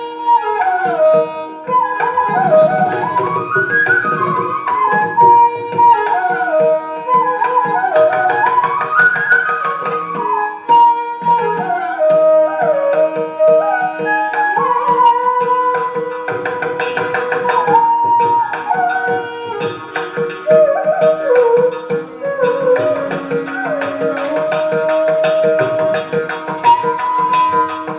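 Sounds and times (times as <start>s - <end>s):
bamboo flute melody: 0.0s - 27.9s
tabla drumming: 0.0s - 27.9s.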